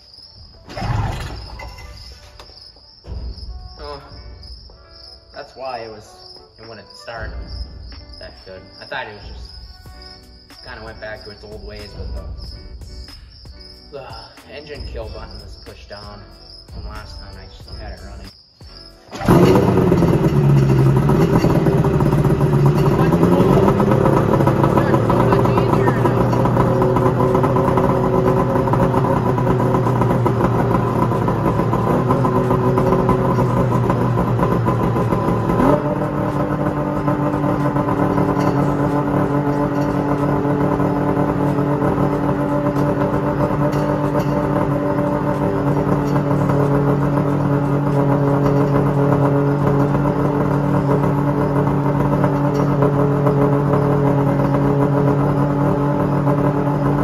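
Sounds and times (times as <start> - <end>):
snowmobile engine running: 19.1 - 57.0.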